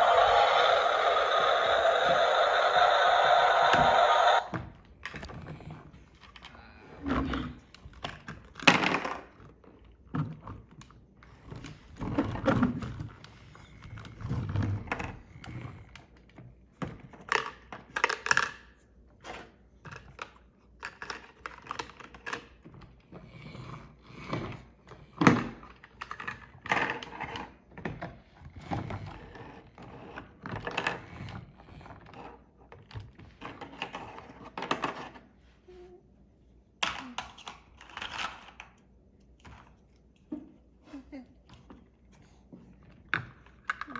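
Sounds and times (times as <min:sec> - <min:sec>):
toy trucks clicking and rattling: 0:00.0 - 0:05.2, 0:17.1 - 0:18.8, 0:19.8 - 0:23.0, 0:36.8 - 0:39.9.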